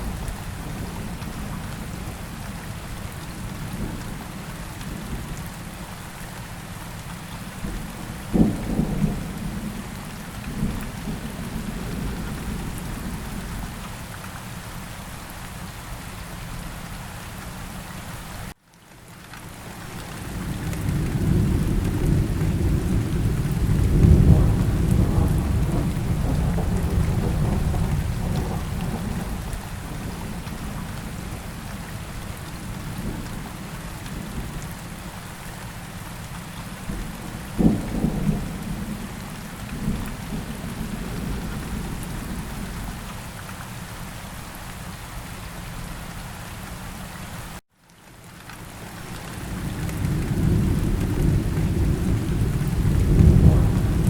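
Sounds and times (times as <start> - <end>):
heavy rain: 0.0 - 54.0
rolling thunder: 20.4 - 31.5, 36.9 - 43.0, 49.6 - 54.0
sharp thunderclap: 21.2 - 29.6, 50.0 - 54.0.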